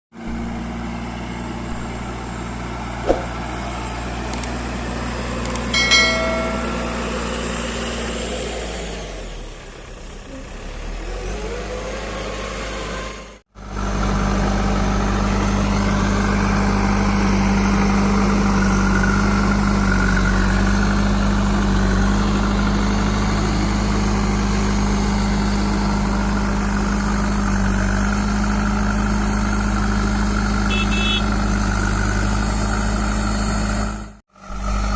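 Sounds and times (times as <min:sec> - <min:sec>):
diesel engine running: 0:00.2 - 0:34.9
brief high-pitched tone: 0:05.8 - 0:07.3.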